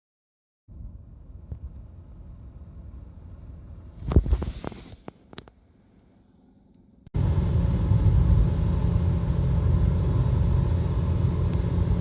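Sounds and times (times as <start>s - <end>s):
car road noise and engine rumble: 7.2s - 12.0s.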